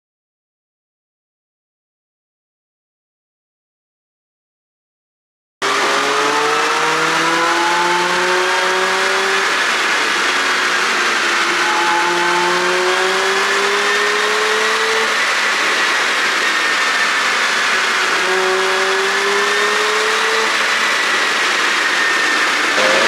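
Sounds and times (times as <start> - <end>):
car engine running: 5.6 - 23.0.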